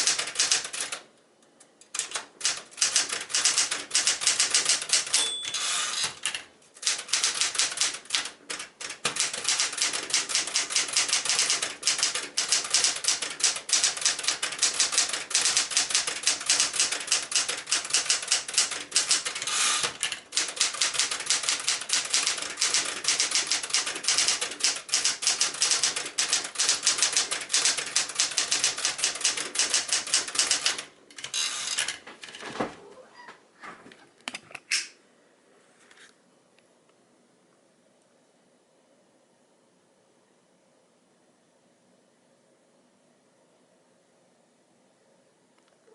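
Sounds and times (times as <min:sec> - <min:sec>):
typewriter keystrike clacks: 0:00.0 - 0:01.0, 0:01.9 - 0:32.4.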